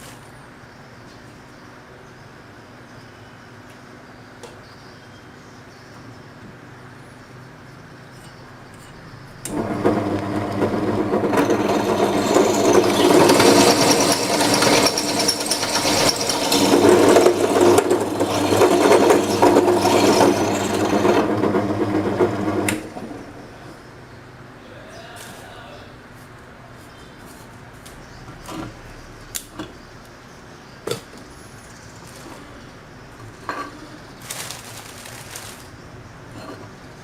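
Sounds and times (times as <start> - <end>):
power tool motor hum: 9.5 - 23.3.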